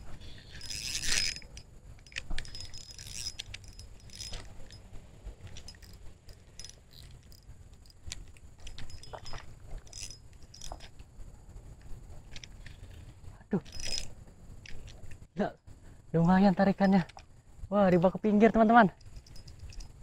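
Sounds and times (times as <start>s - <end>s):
fishing reel clicking and rattling: 0.0s - 10.9s, 12.2s - 12.9s, 13.6s - 15.2s, 18.8s - 20.0s.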